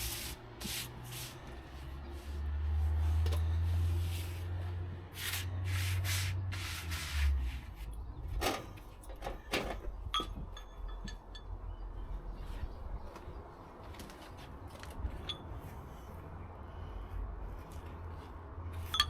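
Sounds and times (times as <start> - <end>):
sharp ringing clink: 10.1 - 11.8.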